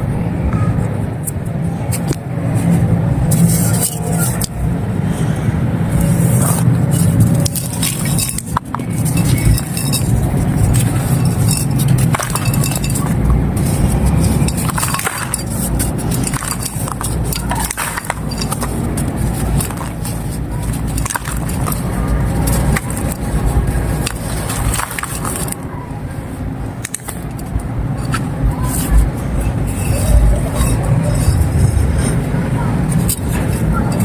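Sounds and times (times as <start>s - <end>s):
low rumble: 0.0s - 34.0s
dry clay crumbling and crunching: 6.0s - 25.6s.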